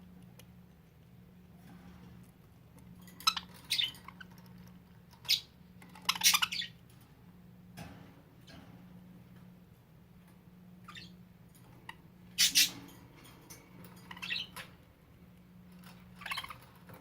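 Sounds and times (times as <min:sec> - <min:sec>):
budgerigars chirping and squawking: 0:03.2 - 0:04.4, 0:05.2 - 0:06.8, 0:10.8 - 0:11.2, 0:11.8 - 0:12.9, 0:13.9 - 0:14.7, 0:16.1 - 0:16.6.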